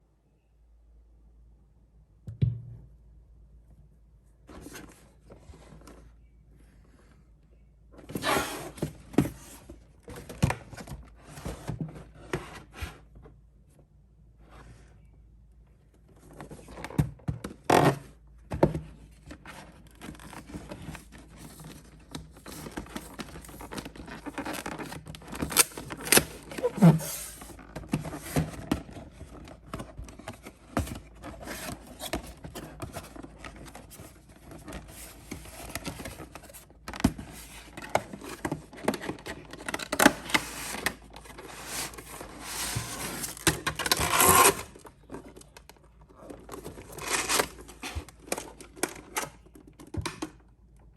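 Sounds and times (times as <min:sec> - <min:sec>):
packaging scraping and rustling: 0:19.5 - 0:49.9.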